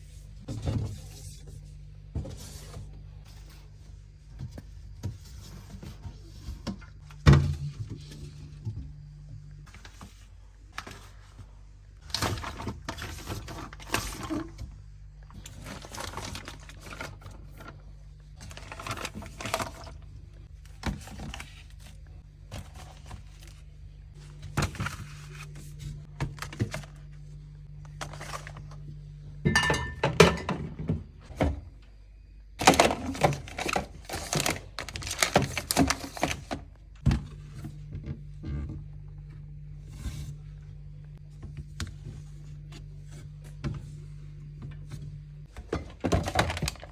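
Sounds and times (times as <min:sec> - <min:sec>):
steady low hum: 0:00.0 - 0:46.9
packaging rustling: 0:15.4 - 0:17.7, 0:32.6 - 0:36.7
containers thunking and knocking: 0:29.4 - 0:31.8, 0:32.6 - 0:37.3, 0:45.5 - 0:46.9.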